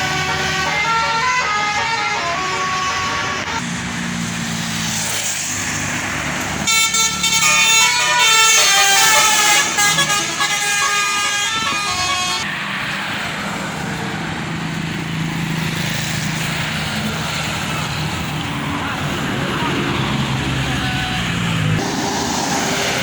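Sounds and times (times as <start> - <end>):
bus air horn playing a tune: 0.0 - 3.6, 6.7 - 12.5
bus engine: 0.0 - 23.0
road traffic: 0.0 - 23.0.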